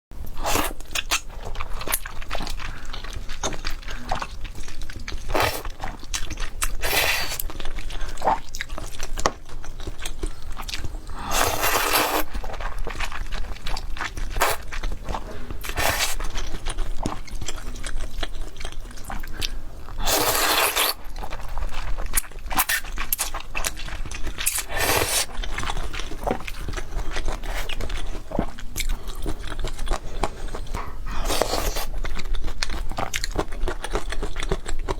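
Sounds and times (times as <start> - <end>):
crisp crunching and chewing: 0.6 - 34.9
noodle slurps: 11.2 - 12.4, 15.3 - 16.2, 20.0 - 21.0, 24.5 - 25.4, 30.1 - 31.9.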